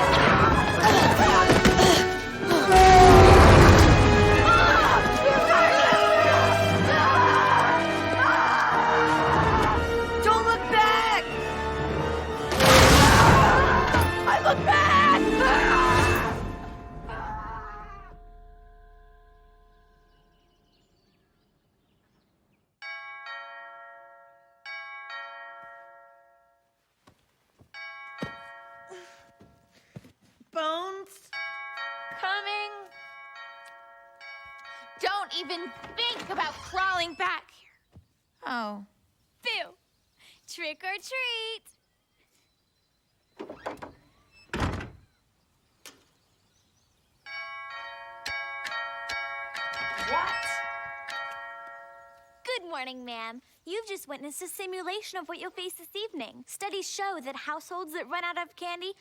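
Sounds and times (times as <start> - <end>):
heavy door thump: 43.4 - 45.0
ding-dong doorbell chime: 47.3 - 52.4.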